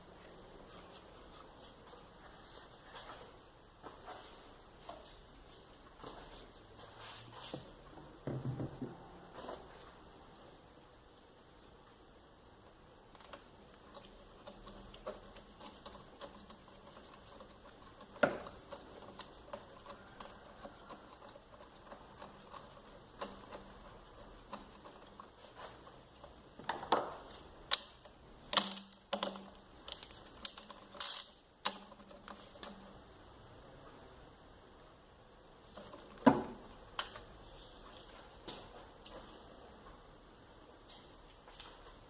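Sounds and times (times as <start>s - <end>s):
mechanical clicks and knocks: 26.2s - 33.0s.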